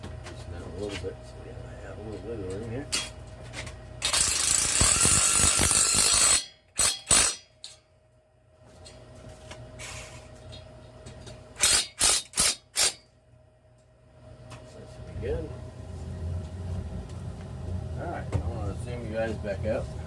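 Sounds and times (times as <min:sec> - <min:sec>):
power drill running: 0:04.0 - 0:06.3.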